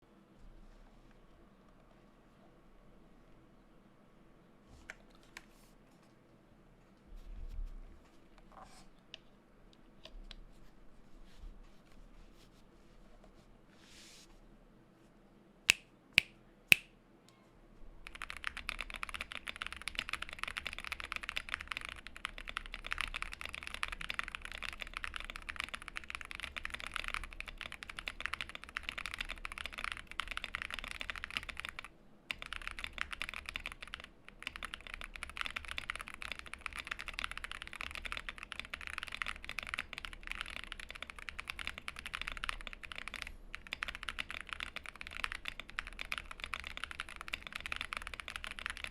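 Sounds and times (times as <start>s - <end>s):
fast typing on keyboard: 18.0s - 48.9s
mechanical keyboard clicks: 18.0s - 48.9s.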